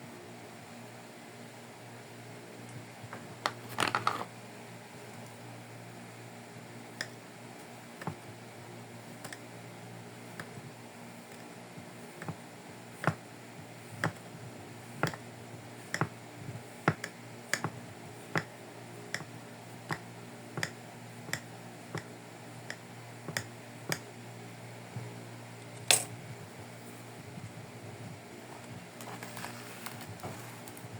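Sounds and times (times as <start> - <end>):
steady low hum: 0.0 - 30.9.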